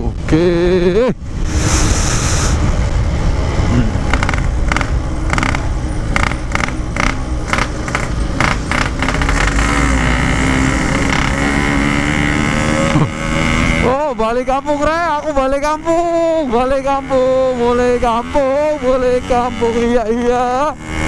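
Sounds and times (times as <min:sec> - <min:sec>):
wind rumble on microphone: 0:00.0 - 0:09.3
motorcycle engine: 0:00.0 - 0:21.0.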